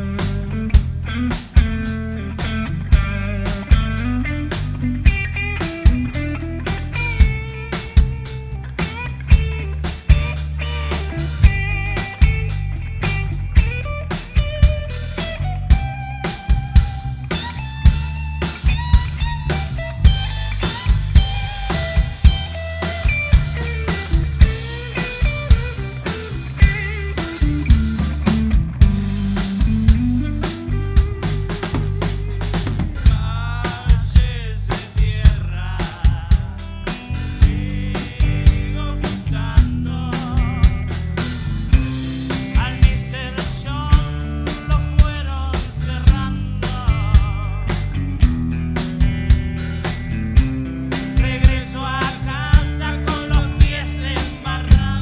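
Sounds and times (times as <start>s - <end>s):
electric guitar with vibrato: 0.0s - 33.0s
bass guitar low notes: 0.0s - 55.0s
drum kit steady beat: 0.0s - 55.0s
rock band playing: 0.0s - 55.0s.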